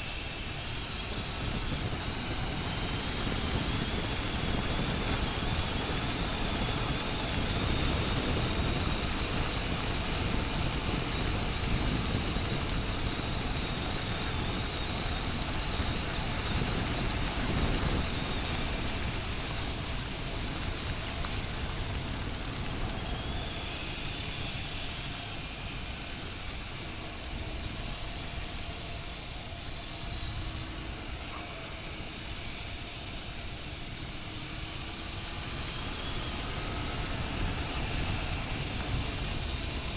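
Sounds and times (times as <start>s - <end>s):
wind and road noise: 31.8s - 39.9s.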